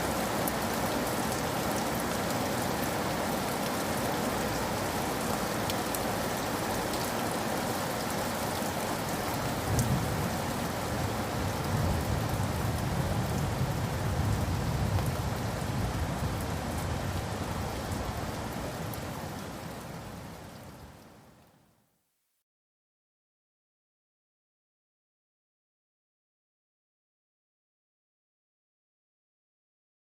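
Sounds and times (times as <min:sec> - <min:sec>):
rain on a roof: 0:00.0 - 0:21.9
distant thunder rumble: 0:09.6 - 0:18.9.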